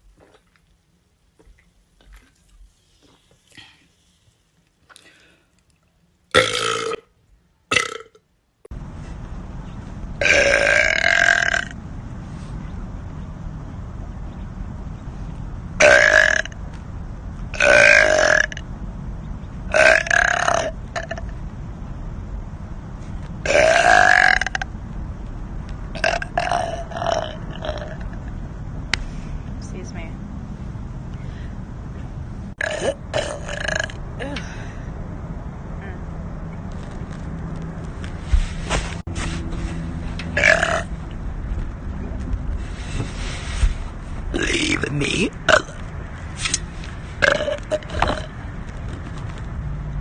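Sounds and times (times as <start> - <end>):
woman burping: 32.6 - 34.5.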